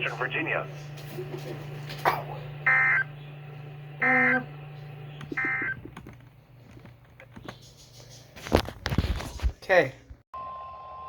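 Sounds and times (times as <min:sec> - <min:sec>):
steady low hum: 0:00.0 - 0:08.4
digital data tone bursts: 0:04.0 - 0:04.5, 0:05.4 - 0:05.8.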